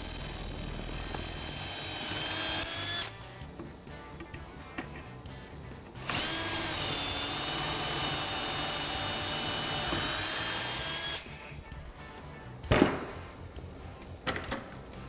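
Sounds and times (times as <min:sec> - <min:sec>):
power drill drilling: 0:00.0 - 0:03.2, 0:06.0 - 0:11.3.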